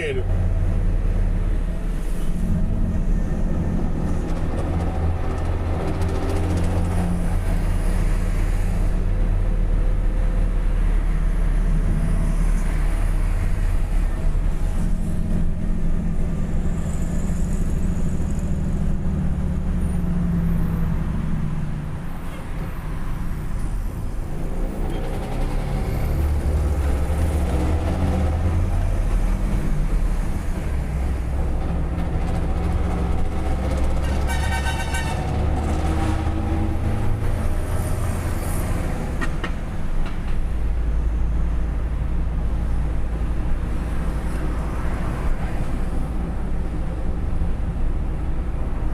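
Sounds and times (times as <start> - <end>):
loud low vehicle engine: 0.0 - 48.9.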